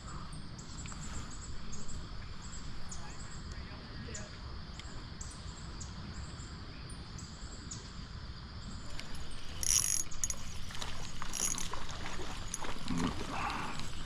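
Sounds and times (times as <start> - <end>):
fishing reel gears clicking: 9.0 - 12.8.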